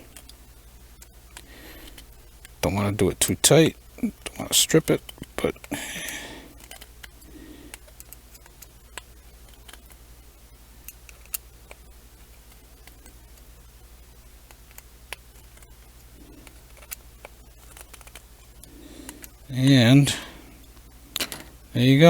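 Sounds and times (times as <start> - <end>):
steady low hum: 0.0 - 22.0.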